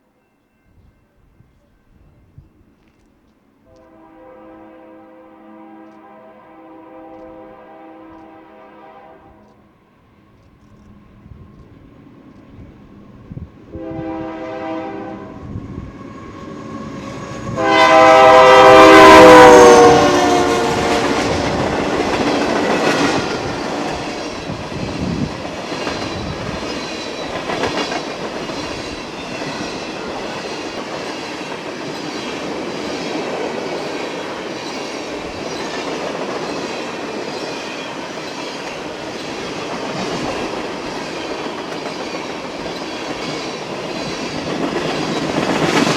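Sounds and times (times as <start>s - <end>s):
locomotive horn blasts: 3.7s - 9.6s, 13.7s - 15.6s, 17.4s - 22.1s.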